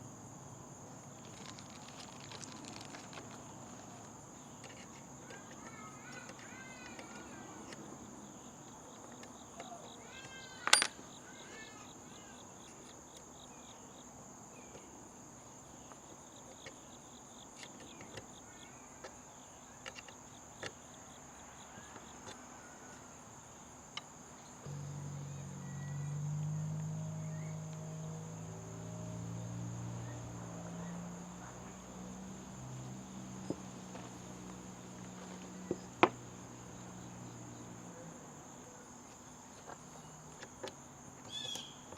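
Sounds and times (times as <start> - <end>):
low multi-tone hum: 24.6 - 35.0
high-pitched insect trilling: 24.6 - 36.0.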